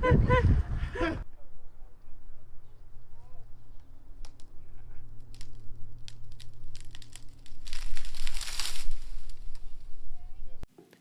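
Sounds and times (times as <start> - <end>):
rustling foliage: 1.9 - 11.0
twigs crackling and snapping: 2.8 - 10.2.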